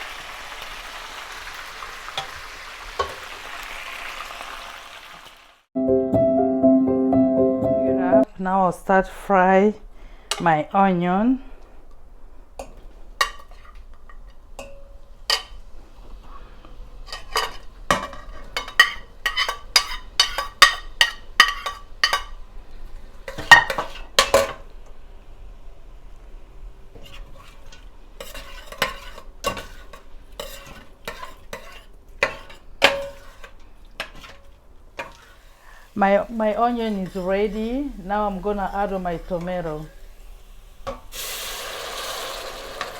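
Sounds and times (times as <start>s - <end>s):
onions frying in oil: 0.0s - 5.7s, 35.1s - 42.9s
utensil scraping against pot: 17.1s - 22.3s, 26.9s - 35.5s, 36.7s - 37.9s.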